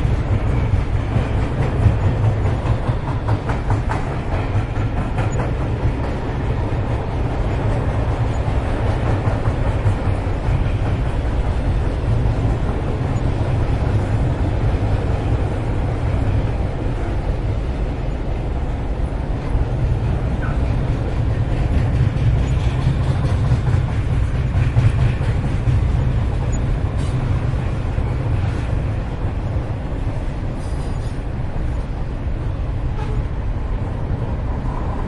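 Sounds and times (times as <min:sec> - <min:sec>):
freight train rumbling: 0:00.0 - 0:35.0.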